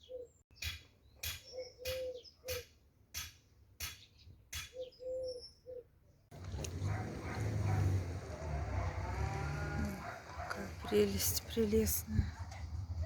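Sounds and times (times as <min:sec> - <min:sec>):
dove cooing: 0:06.4 - 0:11.2.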